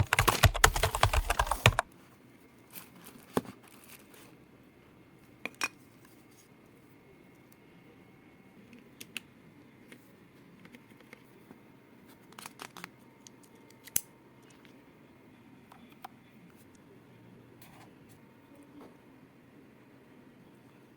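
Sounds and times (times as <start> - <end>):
keyboard keys clacking: 0.0 - 1.8.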